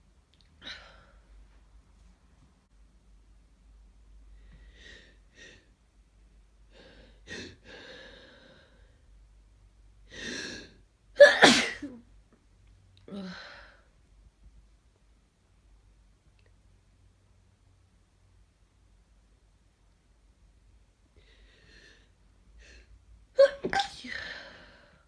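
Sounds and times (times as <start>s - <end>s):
person sneezing: 11.2s - 12.0s, 23.4s - 24.6s.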